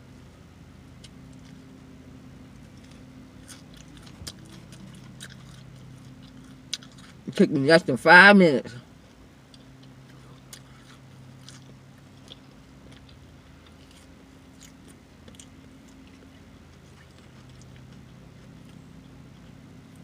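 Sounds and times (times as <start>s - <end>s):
low steady hum: 0.0s - 20.0s
person chewing and lip-smacking: 0.9s - 1.7s, 2.5s - 7.5s, 9.4s - 20.0s.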